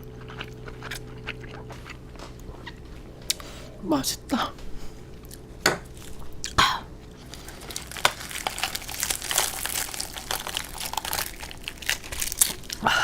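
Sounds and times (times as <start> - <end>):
crispy chicken skin crunching: 7.1 - 13.0.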